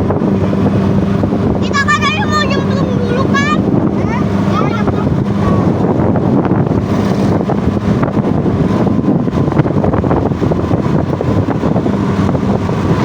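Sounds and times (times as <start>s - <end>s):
off-road vehicle engine: 0.0s - 13.0s
wind buffeting microphone: 0.0s - 13.0s.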